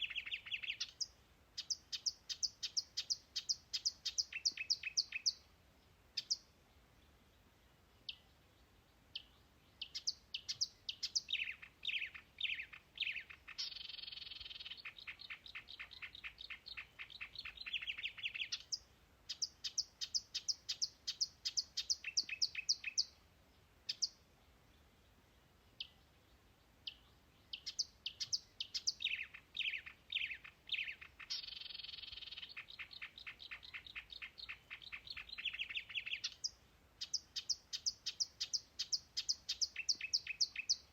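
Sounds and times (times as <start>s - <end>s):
songbird singing: 0.0s - 40.9s.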